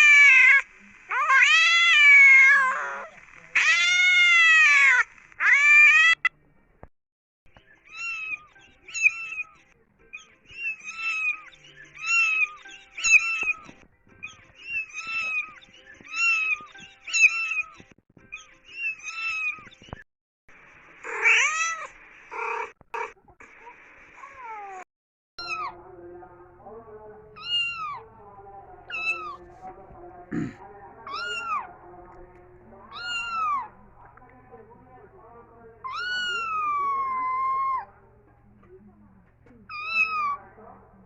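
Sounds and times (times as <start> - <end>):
cats meowing: 0.0 - 6.3, 7.9 - 19.9, 21.0 - 24.8, 25.4 - 25.8, 27.4 - 28.1, 28.9 - 29.4, 31.1 - 31.7, 32.9 - 33.7, 35.8 - 37.9, 39.7 - 40.4.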